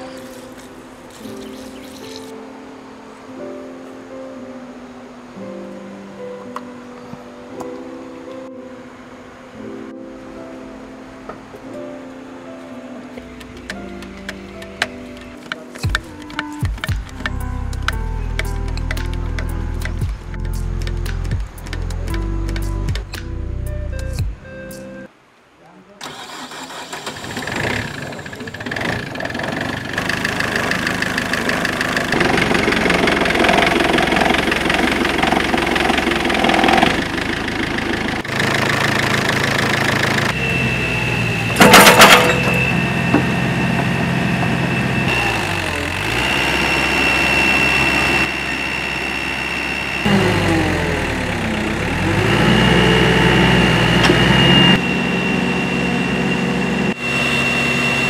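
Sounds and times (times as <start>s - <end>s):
excavator diesel engine running: 26.0s - 58.0s.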